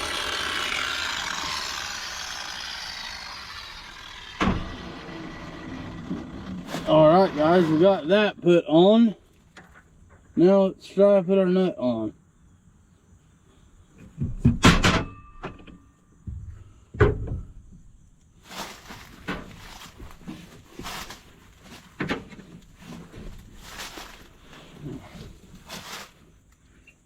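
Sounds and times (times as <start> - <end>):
metal-on-metal scraping: 3.7 - 8.2.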